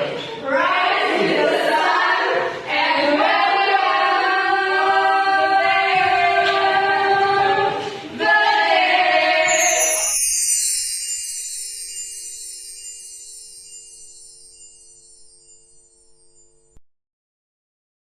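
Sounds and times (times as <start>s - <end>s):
choir singing a cappella: 0.0s - 10.2s.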